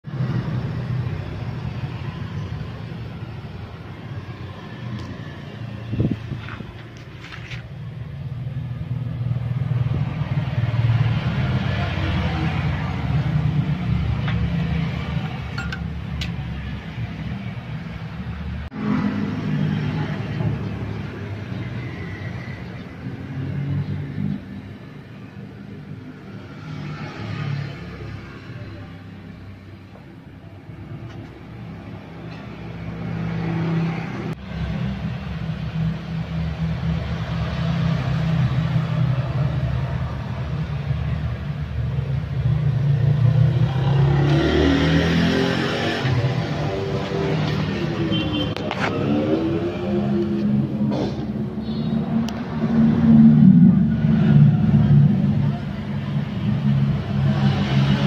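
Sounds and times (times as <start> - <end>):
vehicle engine rumbling: 0.0 - 58.0.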